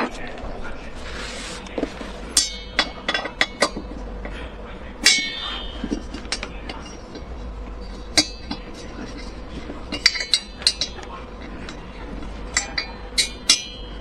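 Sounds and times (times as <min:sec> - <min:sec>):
ringing metal clang: 0:02.3 - 0:07.1, 0:07.8 - 0:08.7, 0:12.5 - 0:14.0.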